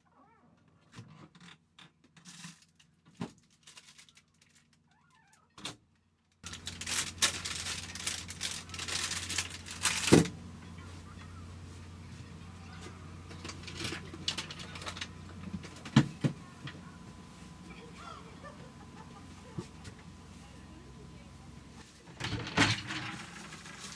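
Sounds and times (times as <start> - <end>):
objects clattering and rustling: 0.9 - 4.8, 6.4 - 16.8, 21.8 - 23.9
low steady hum: 6.4 - 23.9.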